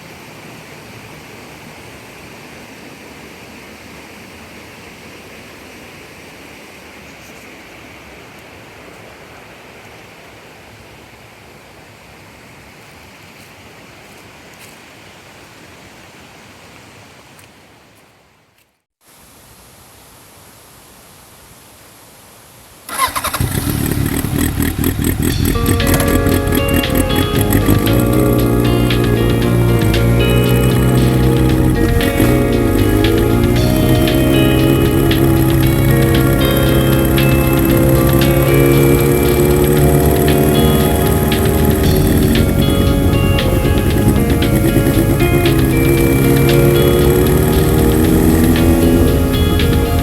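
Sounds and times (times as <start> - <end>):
quiet steady hiss: 0.0 - 50.0
falling water rushing: 22.9 - 50.0
loud rapid regular pulses: 23.1 - 50.0.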